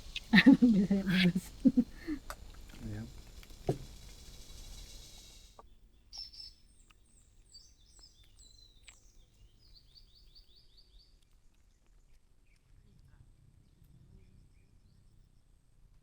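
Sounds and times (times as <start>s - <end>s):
steady hiss: 0.0s - 5.6s
birds chirping faintly: 0.0s - 15.6s.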